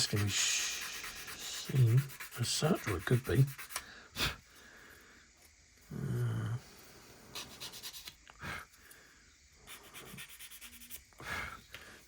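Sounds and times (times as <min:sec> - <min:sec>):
low hum-like vocal sound: 0:00.0 - 0:03.3, 0:05.8 - 0:07.2.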